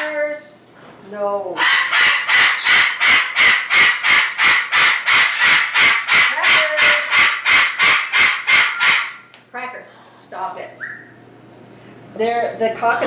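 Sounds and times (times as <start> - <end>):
cockatoo screeching: 1.6 - 9.3.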